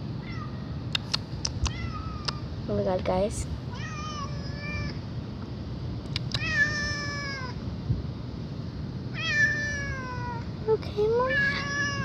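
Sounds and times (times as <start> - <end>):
cat meowing: 3.7 - 5.0, 6.4 - 7.6, 9.1 - 10.4, 11.2 - 12.0.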